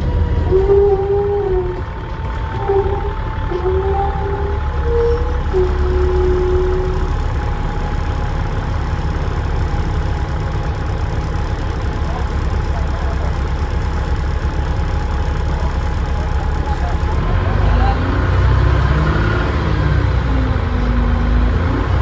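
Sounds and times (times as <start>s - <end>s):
bus diesel engine rumbling: 0.0s - 22.0s
short high squeal: 0.3s - 7.4s
turbo whistle: 0.4s - 7.7s.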